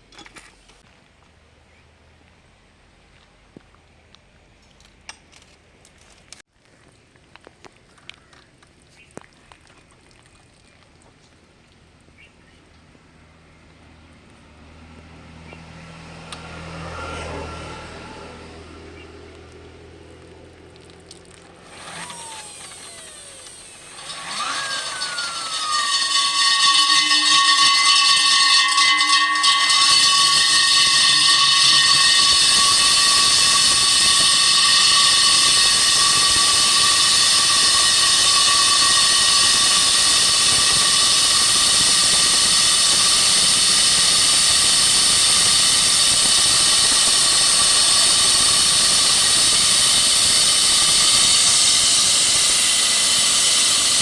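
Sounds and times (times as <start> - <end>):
core drill motor whining: 21.6 - 54.0.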